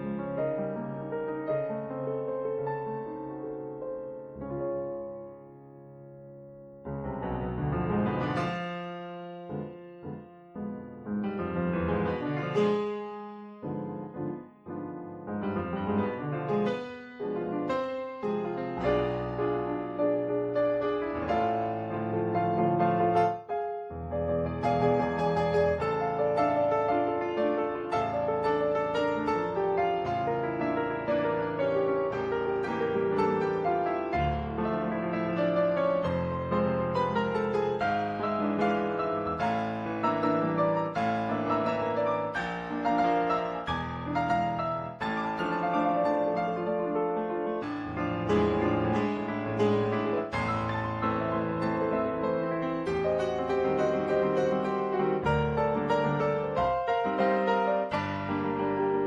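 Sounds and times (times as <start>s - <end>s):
classical piano music: 0.0s - 59.0s.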